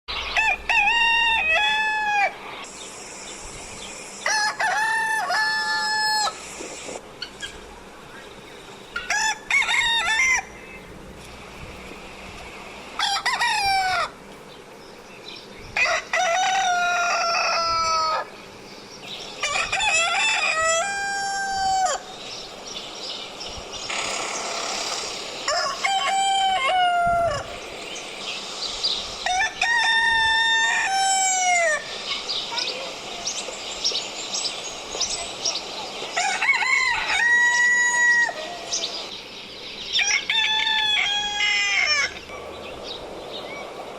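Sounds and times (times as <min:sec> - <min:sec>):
rooster crowing: 0:00.2 - 0:02.4, 0:04.2 - 0:06.5, 0:09.0 - 0:10.6, 0:13.0 - 0:14.2, 0:15.8 - 0:18.3, 0:19.4 - 0:22.1, 0:25.4 - 0:27.6, 0:29.2 - 0:31.9, 0:36.1 - 0:38.8, 0:39.9 - 0:42.2.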